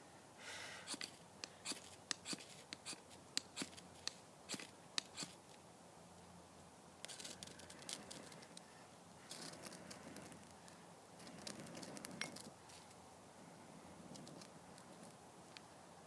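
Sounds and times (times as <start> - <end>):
knife scraping ferrocerium rod: 0.9 - 5.4.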